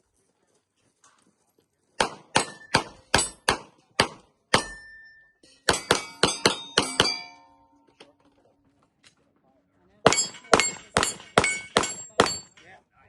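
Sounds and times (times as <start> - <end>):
pistol shots: 2.0 - 4.8
steel plate clanging: 4.6 - 8.0, 10.1 - 12.7.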